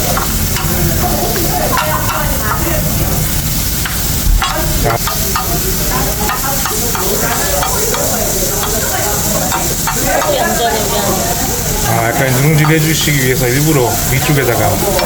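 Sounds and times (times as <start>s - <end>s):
rice sizzling on grill plate: 0.0s - 15.0s.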